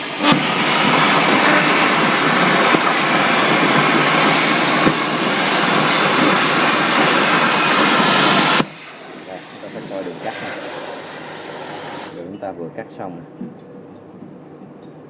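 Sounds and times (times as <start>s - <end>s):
plasma cutter hissing: 0.0s - 12.3s.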